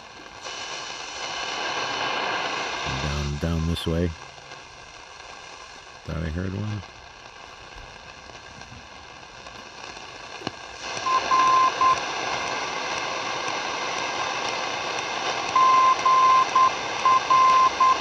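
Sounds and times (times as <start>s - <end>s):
radio static: 0.0s - 18.0s
morse code beeping tone: 11.0s - 12.0s, 15.6s - 18.0s.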